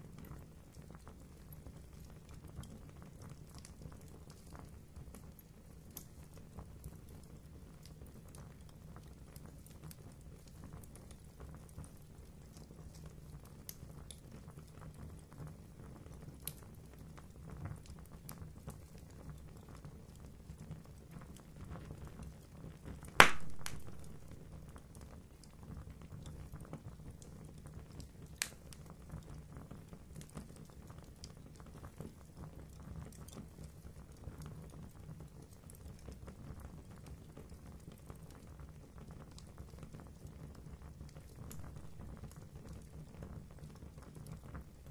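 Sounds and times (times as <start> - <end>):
fire crackling in fireplace: 0.0 - 44.9
loud sharp pop of fire: 23.2 - 24.6, 41.5 - 42.2.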